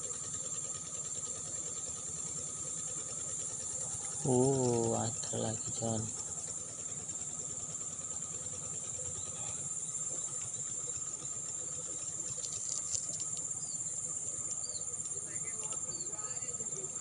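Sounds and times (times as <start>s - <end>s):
crickets chirring: 0.0s - 17.0s.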